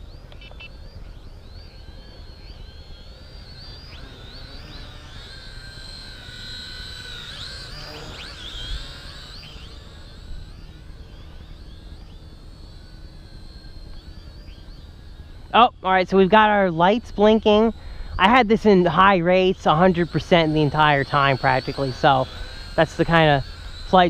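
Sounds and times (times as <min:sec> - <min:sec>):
quadcopter motors whining: 0:00.0 - 0:24.0.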